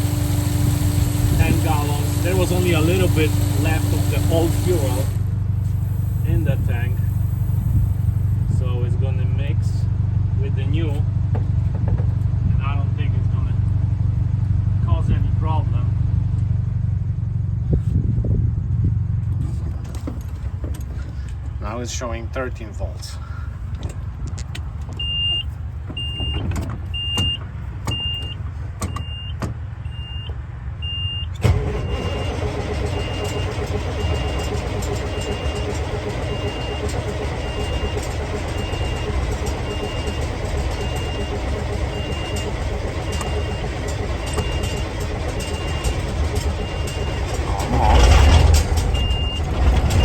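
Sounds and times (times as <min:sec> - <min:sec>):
warning buzzer beeping: 0:00.0 - 0:08.0
diesel engine cranking and starting: 0:00.0 - 0:15.9, 0:18.9 - 0:50.0.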